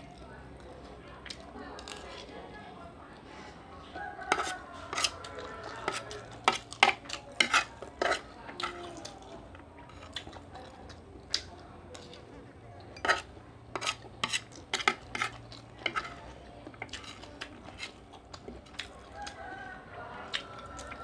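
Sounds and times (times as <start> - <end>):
cutlery clinking on plate: 4.3 - 5.2, 5.9 - 8.2, 13.0 - 16.2.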